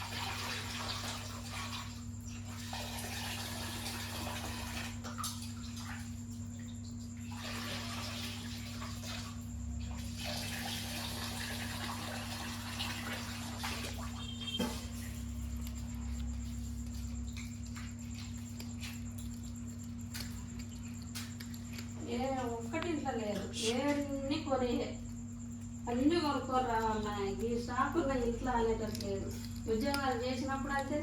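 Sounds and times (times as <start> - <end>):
cat chewing meat: 15.1 - 22.0.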